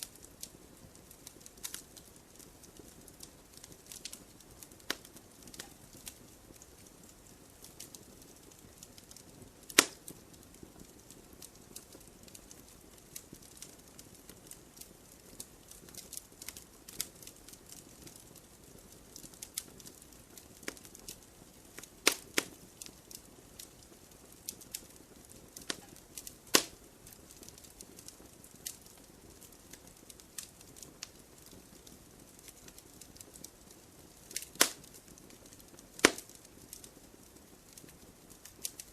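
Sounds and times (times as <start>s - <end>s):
burning wood popping: 0.0s - 38.9s
campfire crackling: 0.0s - 38.9s
faint steady hiss: 0.0s - 38.9s.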